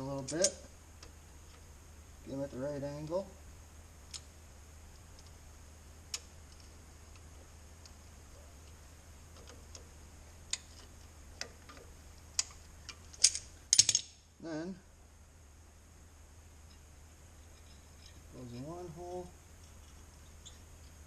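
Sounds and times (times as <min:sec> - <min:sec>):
metallic clicks of brake parts: 0:10.5 - 0:14.2.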